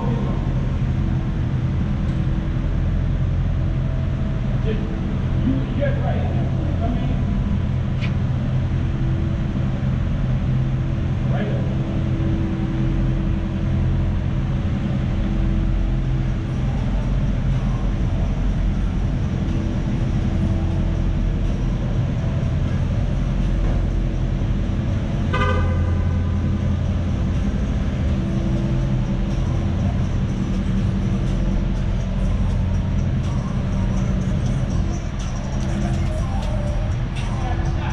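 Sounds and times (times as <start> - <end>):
car engine running: 0.0 - 37.9
car horn toot: 25.3 - 26.3.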